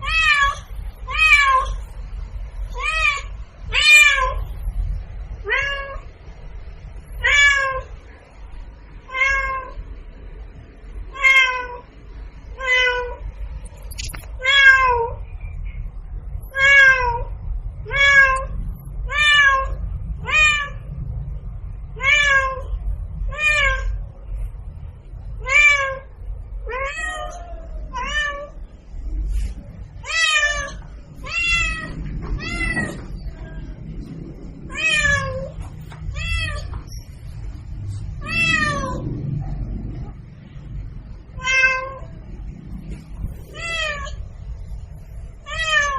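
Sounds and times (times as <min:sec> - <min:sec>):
cat meowing: 0:00.0 - 0:01.9, 0:02.7 - 0:04.5, 0:05.4 - 0:06.1, 0:07.2 - 0:07.9, 0:09.1 - 0:09.8, 0:11.1 - 0:11.8, 0:12.5 - 0:13.2, 0:14.0 - 0:15.2, 0:16.5 - 0:20.8, 0:22.0 - 0:24.0, 0:25.4 - 0:28.6, 0:30.0 - 0:33.8, 0:34.6 - 0:37.0, 0:38.1 - 0:40.1, 0:41.3 - 0:42.2, 0:43.3 - 0:44.3, 0:45.4 - 0:45.9
low steady hum: 0:00.0 - 0:45.9.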